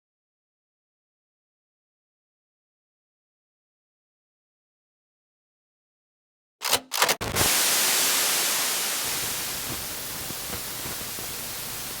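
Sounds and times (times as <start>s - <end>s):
static crackles: 7.2s - 12.0s
static hiss: 7.2s - 12.0s.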